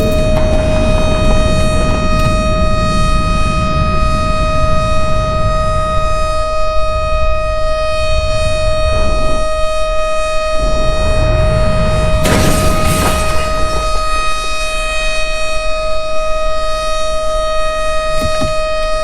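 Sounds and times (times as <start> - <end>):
siren steady tone: 0.0 - 12.3
low rumbling noise: 0.0 - 15.4.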